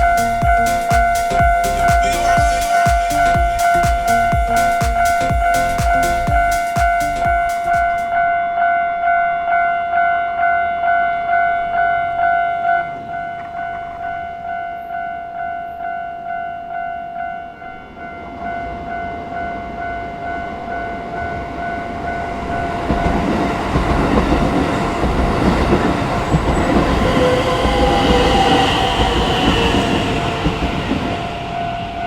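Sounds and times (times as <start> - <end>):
falling whine: 0.0 - 8.2, 22.7 - 32.0
train wheels rumbling on rails: 0.0 - 8.2, 18.3 - 32.0
level crossing warning bell: 0.0 - 32.0.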